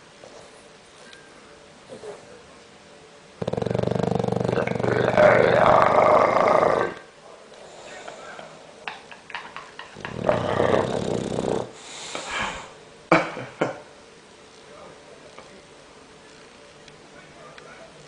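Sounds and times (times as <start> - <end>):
dog snoring: 3.4 - 7.0, 10.0 - 11.8
dog snorting: 3.4 - 7.0, 10.0 - 11.8.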